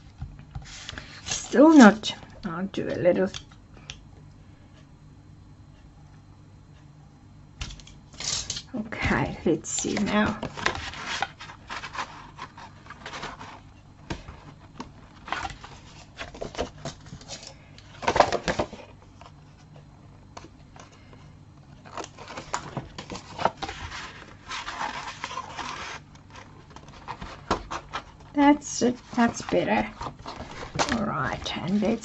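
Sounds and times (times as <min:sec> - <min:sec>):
paper rustling and sliding: 0:00.6 - 0:01.8, 0:10.0 - 0:18.8, 0:21.9 - 0:28.2, 0:28.9 - 0:32.0.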